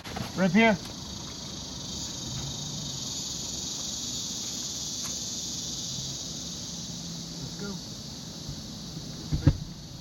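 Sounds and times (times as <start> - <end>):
insects chirring: 0.0 - 10.0.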